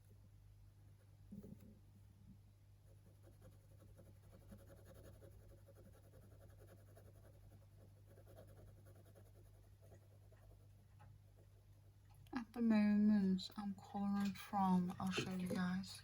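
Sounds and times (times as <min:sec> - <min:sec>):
low electrical hum: 0:00.0 - 0:16.0
pen scratching on paper: 0:03.0 - 0:10.7.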